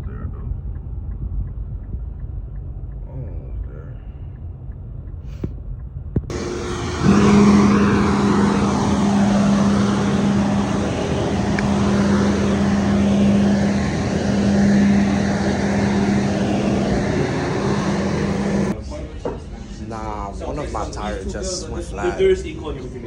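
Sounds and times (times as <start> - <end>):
road and wind noise: 0.0 - 18.8
low hum: 6.3 - 18.8.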